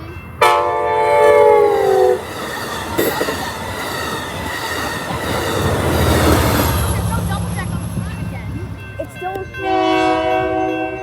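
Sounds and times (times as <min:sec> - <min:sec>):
train rumbling on rails: 0:00.0 - 0:11.0
train horn blast: 0:00.4 - 0:03.4, 0:09.6 - 0:11.0.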